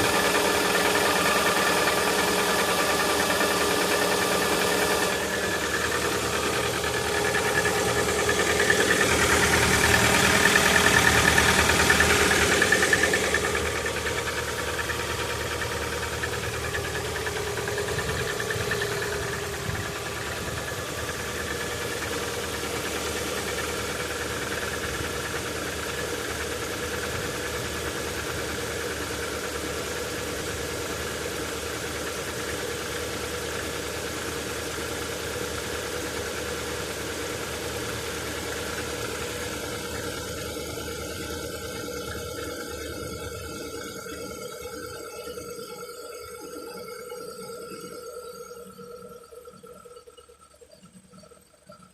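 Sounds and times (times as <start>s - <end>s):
car engine idling and knocking: 0.0s - 46.3s.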